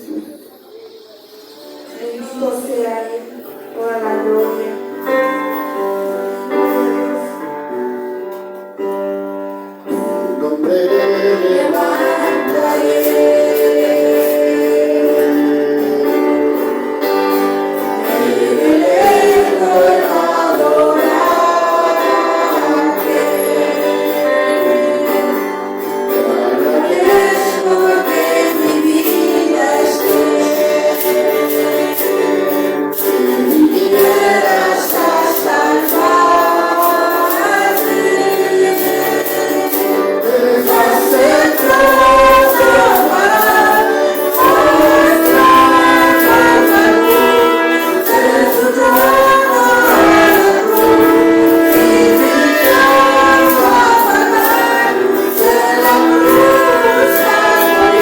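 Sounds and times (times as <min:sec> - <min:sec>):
congregation singing a hymn: 0:00.0 - 0:08.8, 0:09.7 - 0:58.0
instrumental accompaniment: 0:00.0 - 0:58.0
percussion beat: 0:26.0 - 0:58.0.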